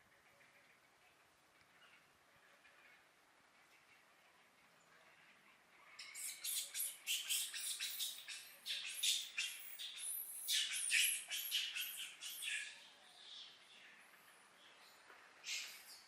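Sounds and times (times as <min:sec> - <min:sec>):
baby monkey squealing: 0:06.0 - 0:12.5.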